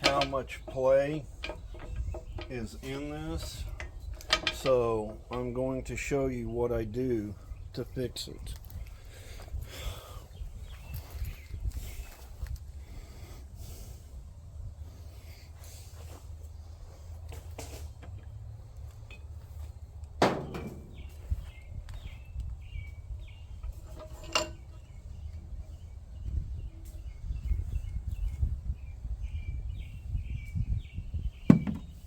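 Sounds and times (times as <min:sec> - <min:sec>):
wind rumble on microphone: 0:08.4 - 0:15.4, 0:20.6 - 0:32.0.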